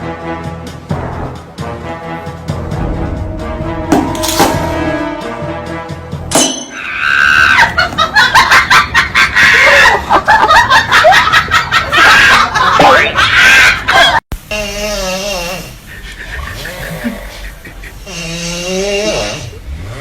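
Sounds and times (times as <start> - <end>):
background music: 0.0 - 12.8
sharp crash: 2.7 - 5.6
high-pitched shrieking cries: 6.7 - 7.8, 11.9 - 14.2.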